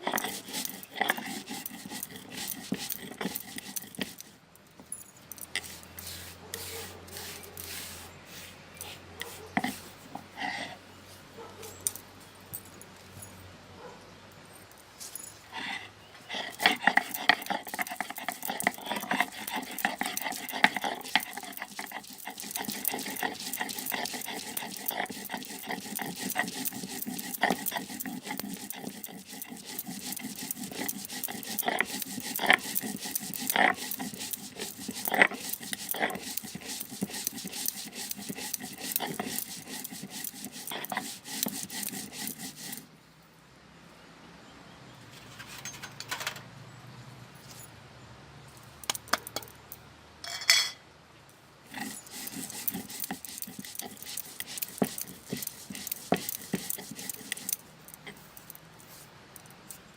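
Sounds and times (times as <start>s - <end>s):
stone grinding on stone slab: 0.0s - 4.4s, 5.4s - 10.8s, 16.3s - 42.9s, 51.7s - 58.5s.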